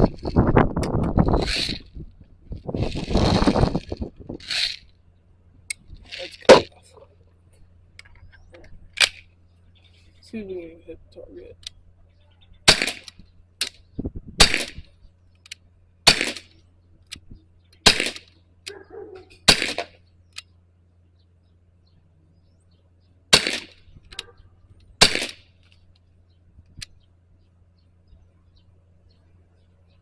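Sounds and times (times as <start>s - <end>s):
air pistol shots popping: 12.6s - 13.8s, 14.4s - 15.0s, 16.0s - 17.2s, 17.8s - 20.0s, 23.3s - 25.5s.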